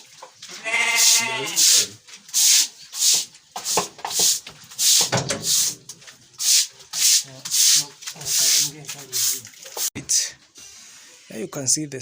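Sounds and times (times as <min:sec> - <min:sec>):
stiff brush scrubbing: 0:01.0 - 0:09.9.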